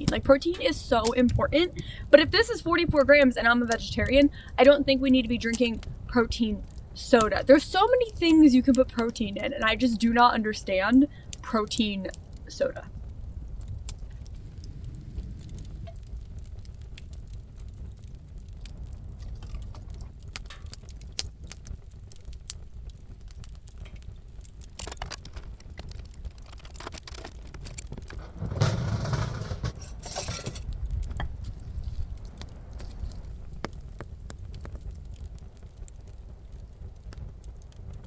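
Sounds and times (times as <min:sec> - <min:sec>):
low steady rumble: 0:00.0 - 0:20.6
rustling: 0:24.8 - 0:30.8.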